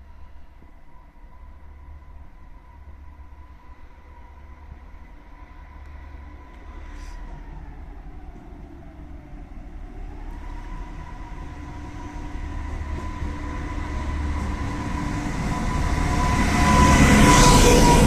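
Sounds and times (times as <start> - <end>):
train wheels rumbling: 0.0 - 18.0
train brakes squealing: 12.3 - 18.0.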